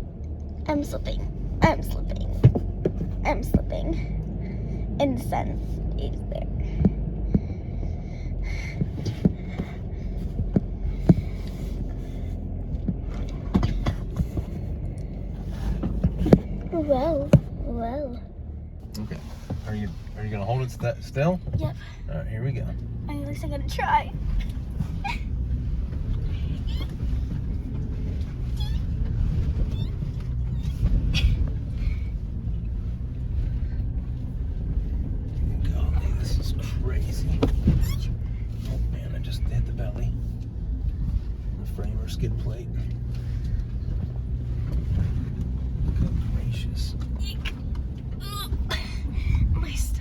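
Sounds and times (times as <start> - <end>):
engine and drivetrain rumble: 0.0 - 50.0.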